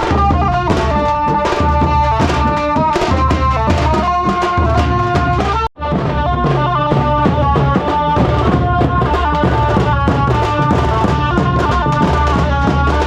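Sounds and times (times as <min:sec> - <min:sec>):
drum band playing fast rhythm: 0:00.0 - 0:13.0.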